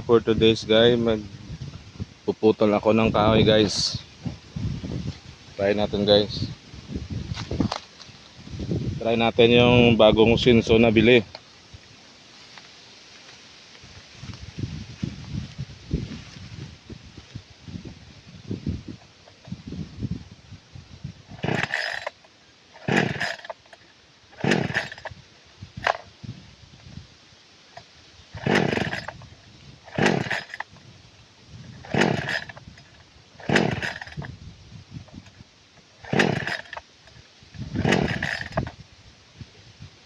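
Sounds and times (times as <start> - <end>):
chainsaw recoil starter cranking: 18.9 - 19.6, 21.2 - 26.2, 27.7 - 38.8.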